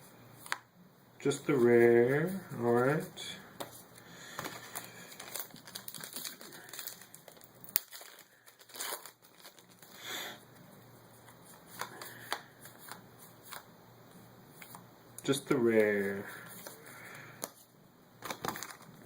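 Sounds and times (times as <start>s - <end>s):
cards rustling: 1.5s - 10.1s, 11.2s - 13.7s, 14.6s - 19.0s
foil wrapper crinkling: 4.2s - 10.4s, 18.2s - 19.0s.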